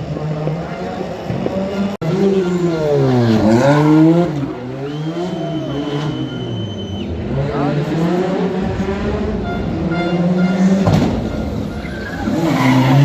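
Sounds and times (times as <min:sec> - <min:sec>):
car engine revving: 0:00.0 - 0:13.0
thin high whistle: 0:04.8 - 0:07.1.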